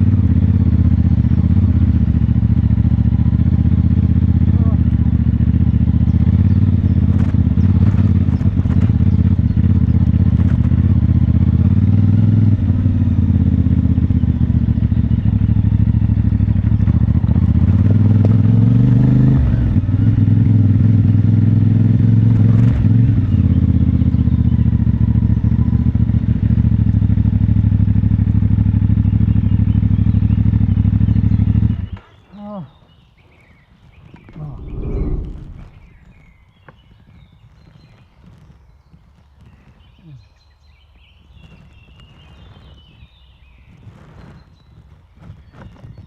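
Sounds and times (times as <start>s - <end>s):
motorcycle engine running: 0.0s - 32.0s.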